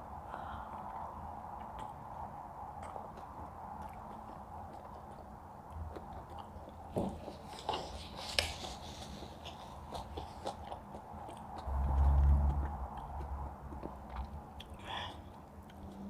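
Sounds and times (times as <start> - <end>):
person chewing and biting: 2.8 - 16.0
low rumble: 11.5 - 14.8.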